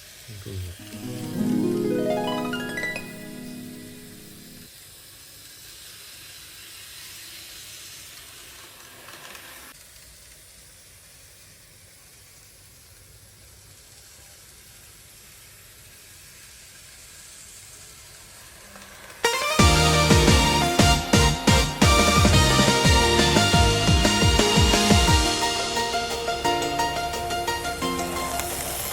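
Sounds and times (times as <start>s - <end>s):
model train motor whirring: 5.6s - 19.2s.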